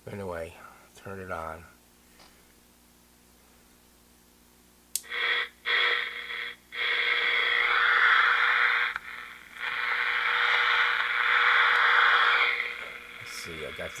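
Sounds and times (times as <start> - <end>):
radio static hiss: 5.0 - 14.0.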